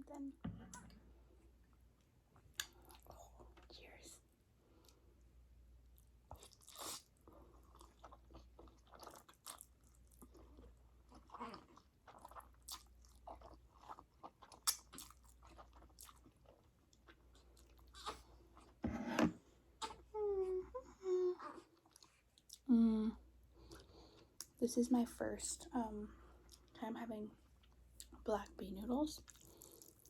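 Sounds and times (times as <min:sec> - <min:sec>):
chewing with wet mouth smacks: 0:06.3 - 0:18.7, 0:21.8 - 0:22.7, 0:29.2 - 0:30.0.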